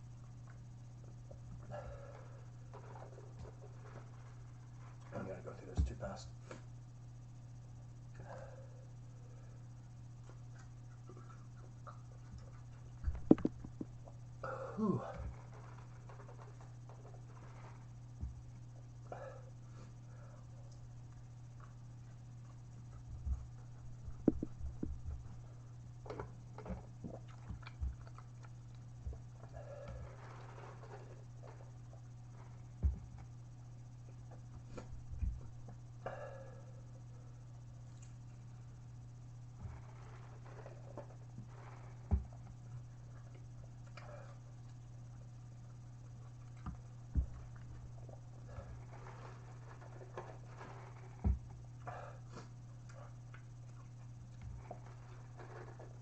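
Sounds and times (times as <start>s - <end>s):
steady low hum: 0.0s - 56.0s
dull thumps: 13.0s - 14.0s, 23.0s - 28.2s, 29.0s - 31.6s, 32.7s - 33.3s, 46.6s - 51.6s
mouth clicks and chewing: 27.1s - 28.8s.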